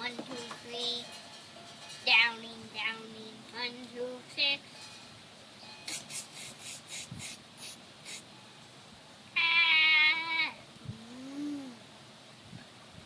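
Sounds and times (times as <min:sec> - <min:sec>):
child imitating cat meow: 0:09.4 - 0:11.8.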